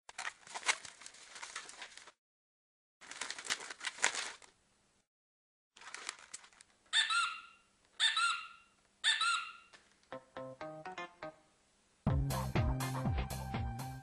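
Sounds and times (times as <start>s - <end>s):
crackling rustling noise: 0.1s - 2.2s, 3.0s - 5.0s, 5.8s - 7.0s
honking bird-like calls: 7.0s - 9.8s.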